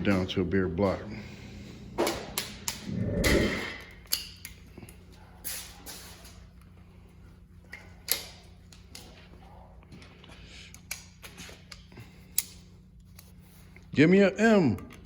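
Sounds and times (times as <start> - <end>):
low steady hum: 0.0 - 15.0
metallic clicks of hand tools: 3.8 - 4.6.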